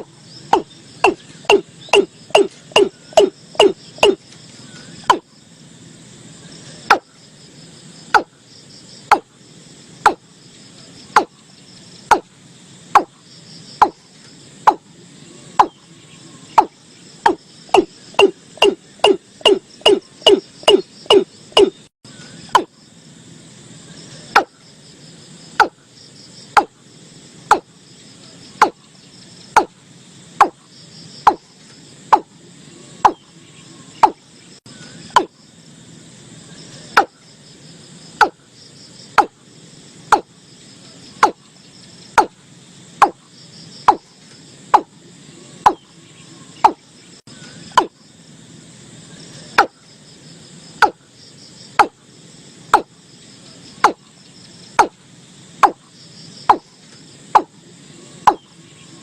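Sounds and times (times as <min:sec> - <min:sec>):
bird calling sharp notes: 0:00.0 - 0:05.2, 0:15.6 - 0:22.7, 0:34.9 - 0:35.3
insects trilling: 0:00.0 - 0:59.0.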